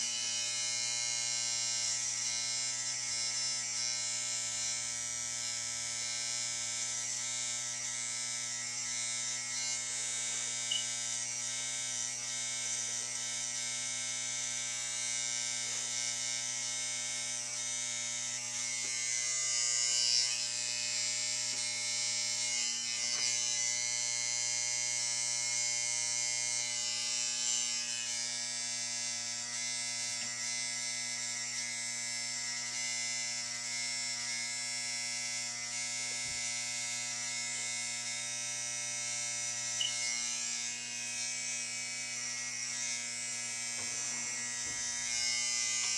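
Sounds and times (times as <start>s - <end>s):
electric hair clippers humming: 0.0s - 45.9s.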